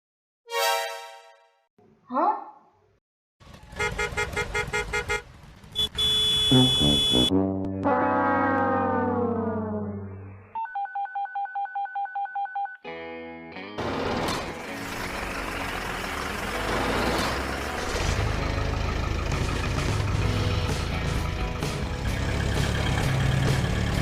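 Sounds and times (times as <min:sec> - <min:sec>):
falling horn-like tone: 0:06.5 - 0:10.5
machine noise with engine rumble: 0:13.8 - 0:24.0.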